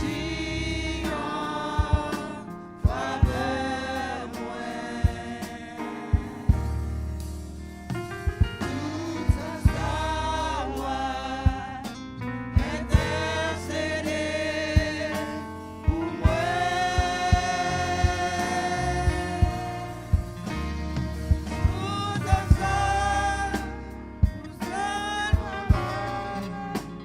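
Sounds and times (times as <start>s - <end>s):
gospel singing with band: 0.0s - 27.0s
low bass notes: 0.0s - 27.0s
sharp drum hits: 5.0s - 10.9s, 12.6s - 14.2s, 14.8s - 26.9s.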